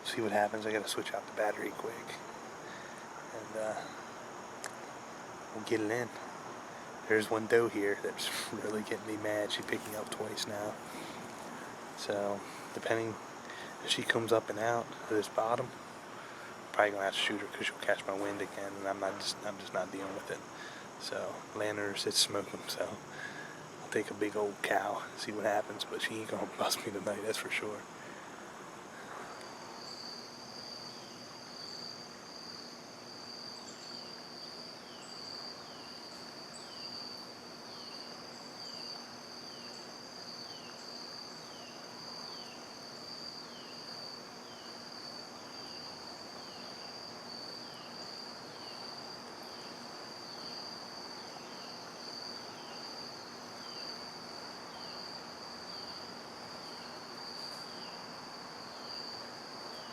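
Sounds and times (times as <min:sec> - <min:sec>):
crickets trilling: 0:00.0 - 0:59.9.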